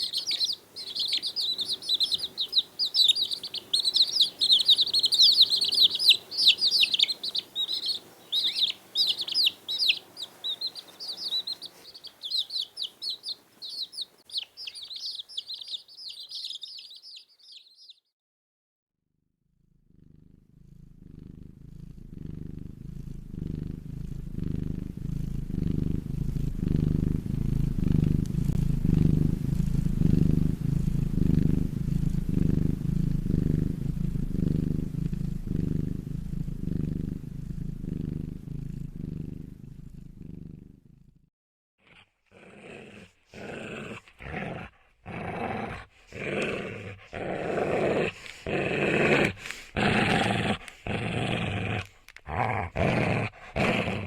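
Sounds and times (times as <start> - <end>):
cat purring: 0.0 - 17.8, 19.8 - 41.3, 42.7 - 54.0
dog growling: 41.8 - 54.0.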